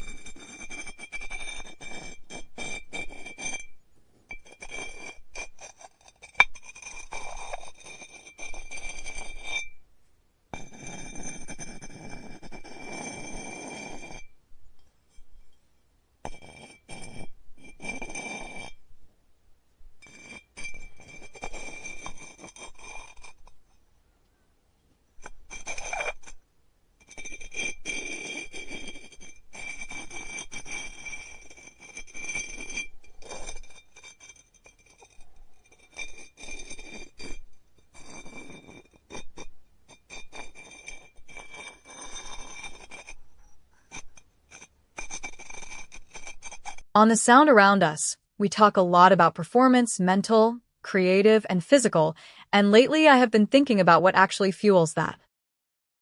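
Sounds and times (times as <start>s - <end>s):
tools scraping clay: 0.0s - 9.8s, 10.5s - 15.6s, 16.2s - 18.8s, 20.0s - 23.9s, 25.2s - 26.4s, 27.0s - 46.9s.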